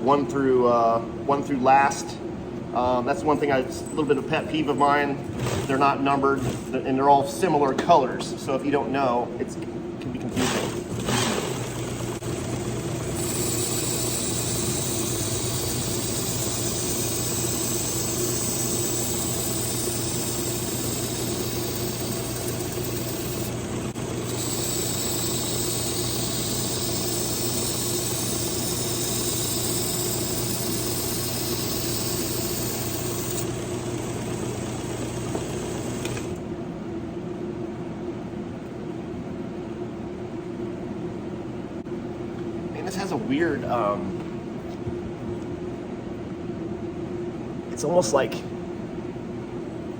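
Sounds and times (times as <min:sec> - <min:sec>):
belt sharpener motor hum: 0:10.3 - 0:36.4
knife hissing on abrasive belt: 0:13.2 - 0:23.5, 0:24.2 - 0:33.5.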